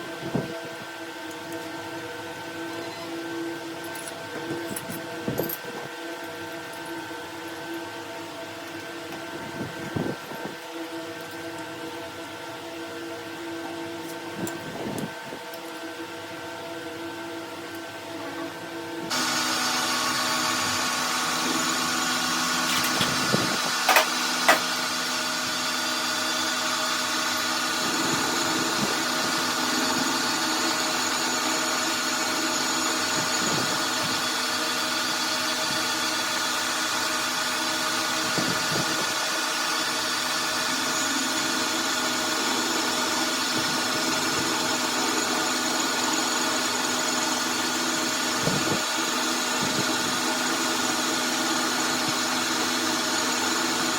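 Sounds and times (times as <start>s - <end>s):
machine tool motor humming: 19.1s - 53.9s.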